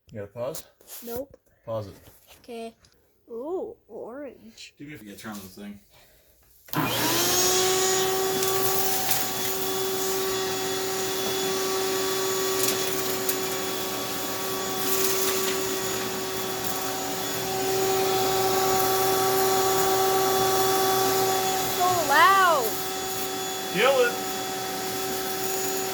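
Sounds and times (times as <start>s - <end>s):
vacuum cleaner running: 6.7s - 25.9s.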